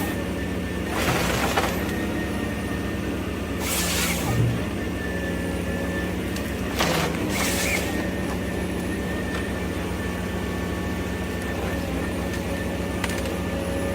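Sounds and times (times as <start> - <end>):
harvester engine running: 0.0 - 13.9
burst of hissing: 3.6 - 4.4.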